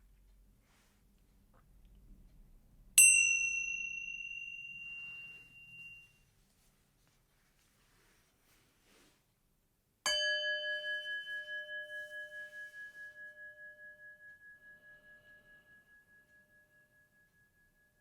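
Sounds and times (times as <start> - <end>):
meditation bell ringing: 3.0 - 6.2, 10.1 - 18.0.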